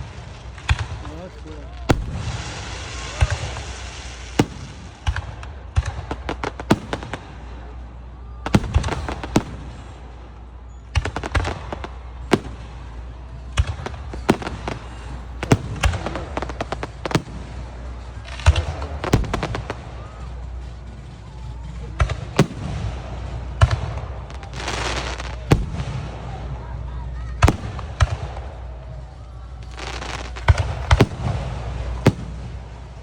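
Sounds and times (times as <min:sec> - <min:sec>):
fireworks bangs and crackling: 0:00.0 - 0:33.0.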